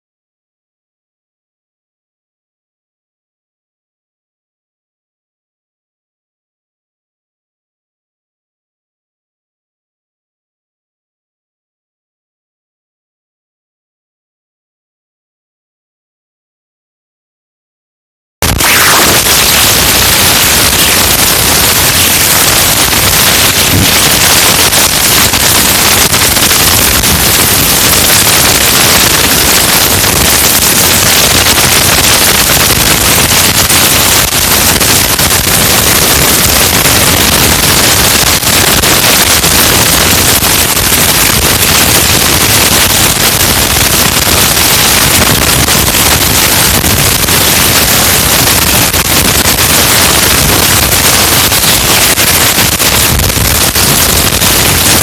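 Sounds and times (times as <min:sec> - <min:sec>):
microphone static hiss: 0:18.4 - 0:55.0.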